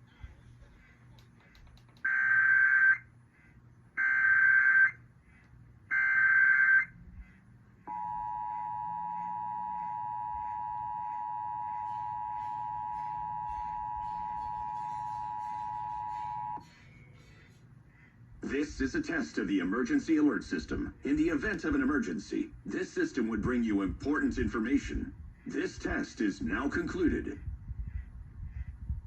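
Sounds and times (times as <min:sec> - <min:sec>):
two-tone attention signal: 0:07.9 - 0:16.6
warbling digital data tones: 0:07.9 - 0:16.6.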